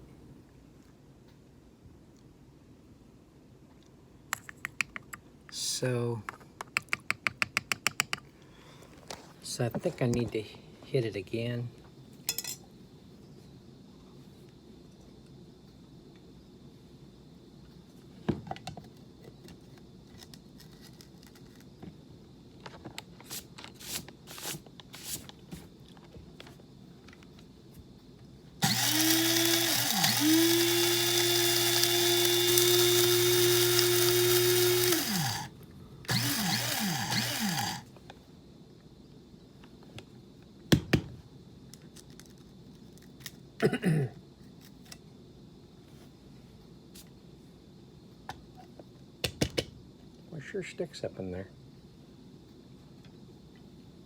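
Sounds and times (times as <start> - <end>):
coffee grinder running: 28.6 - 35.5, 36.1 - 37.8.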